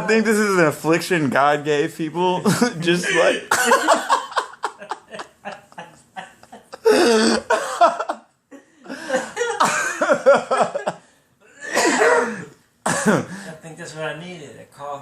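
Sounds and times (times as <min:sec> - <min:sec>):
man coughing: 0:02.5 - 0:04.1, 0:06.8 - 0:08.1, 0:11.5 - 0:13.4.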